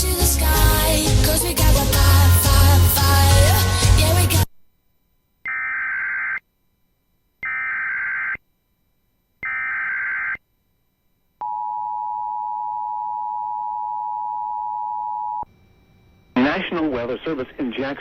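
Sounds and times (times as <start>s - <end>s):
data tone bursts: 13.7s - 18.0s.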